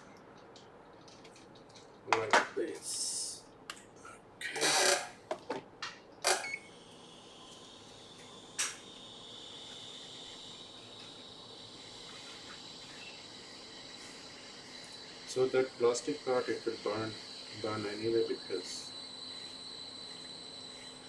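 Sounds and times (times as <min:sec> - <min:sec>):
faint high whine: 0:06.2 - 0:21.0
hot air station blowing: 0:06.7 - 0:21.0.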